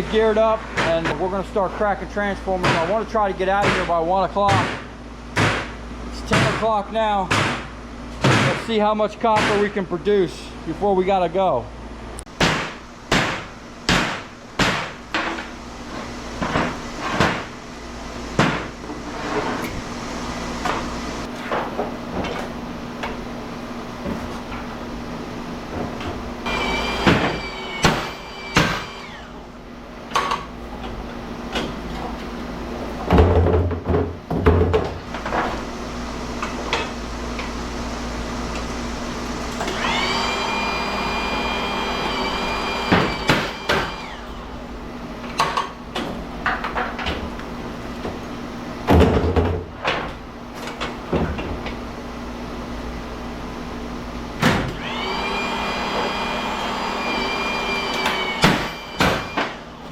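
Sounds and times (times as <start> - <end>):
steady machine hum: 0.0 - 33.2, 35.0 - 48.9
power tool whining: 26.4 - 29.5, 38.4 - 44.6, 54.7 - 59.6.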